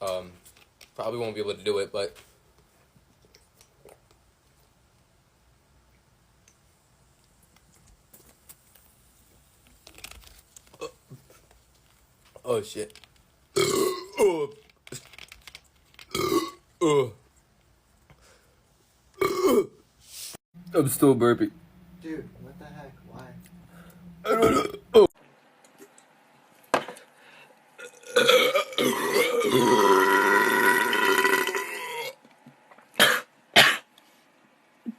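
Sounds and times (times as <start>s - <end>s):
man burping loudly: 13.6s - 14.6s, 16.1s - 17.2s, 19.2s - 19.8s, 24.2s - 25.1s, 27.8s - 32.2s.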